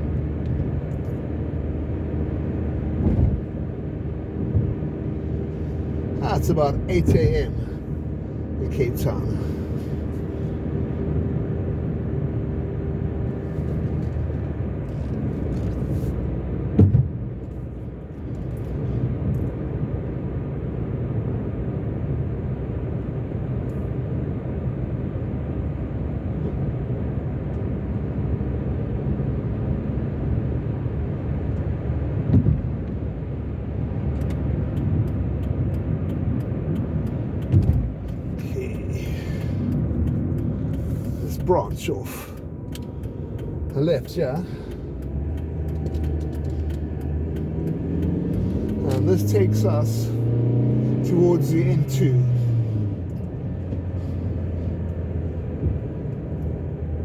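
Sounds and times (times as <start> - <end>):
car road and engine noise: 0.0 - 57.0.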